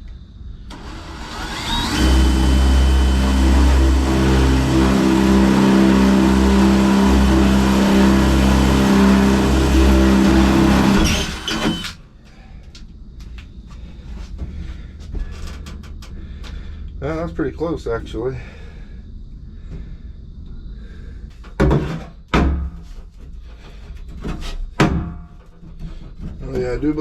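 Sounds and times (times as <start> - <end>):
power tool cutting metal: 0.7 - 12.0.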